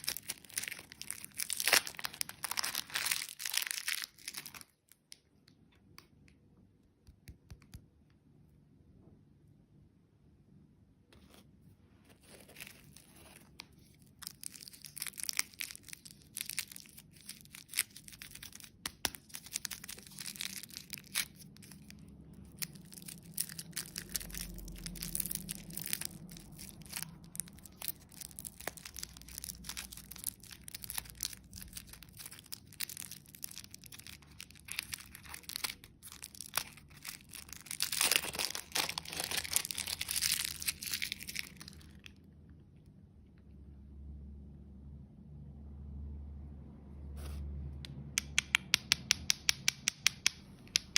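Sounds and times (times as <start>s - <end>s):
candy packaging crinkling: 0.0s - 6.1s, 12.0s - 42.2s.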